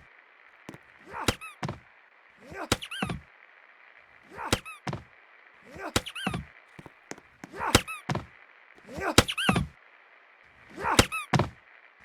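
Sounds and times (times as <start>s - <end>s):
short rising and falling squeak: 1.2s - 1.8s, 2.7s - 3.2s, 4.5s - 5.0s, 6.0s - 6.4s, 8.9s - 9.7s.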